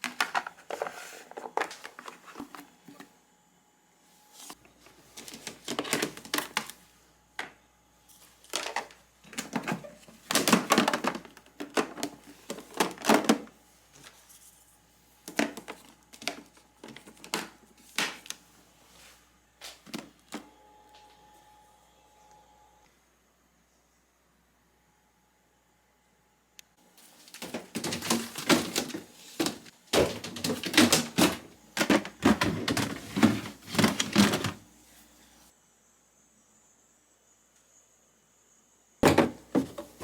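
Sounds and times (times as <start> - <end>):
kitchen items clicking and clattering: 0.0 - 3.1, 4.8 - 6.8, 8.5 - 13.5, 15.3 - 18.3, 27.2 - 34.6, 39.0 - 40.0.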